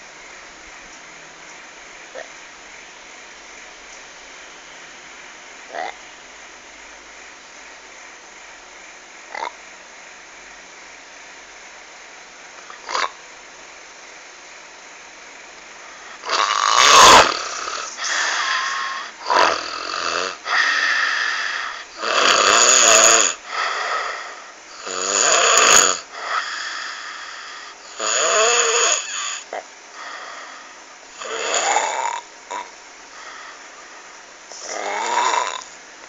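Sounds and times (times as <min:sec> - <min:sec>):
loud snoring: 0:12.8 - 0:13.2, 0:16.0 - 0:33.6, 0:34.5 - 0:35.7.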